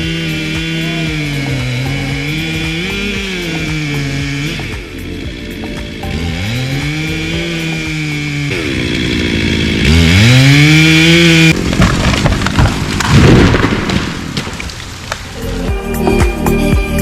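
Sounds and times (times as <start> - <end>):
chainsaw revving: 0.0 - 14.2
crackling and thumps: 11.5 - 15.3.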